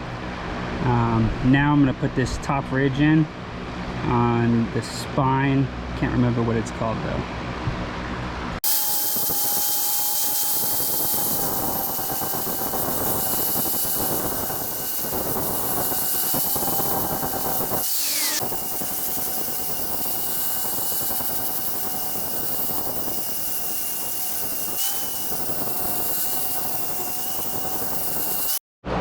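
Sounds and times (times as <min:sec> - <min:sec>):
belt grinder grinding steel: 0:08.6 - 0:28.6.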